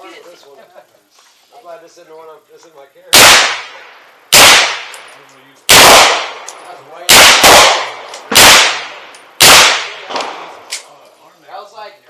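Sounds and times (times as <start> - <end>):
gunshots: 3.1 - 5.1, 5.7 - 10.7.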